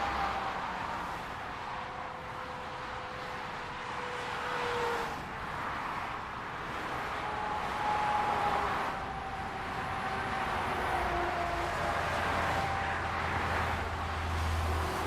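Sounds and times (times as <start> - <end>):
highway traffic rushing: 0.0 - 15.0
passing vehicle tone: 6.9 - 15.0.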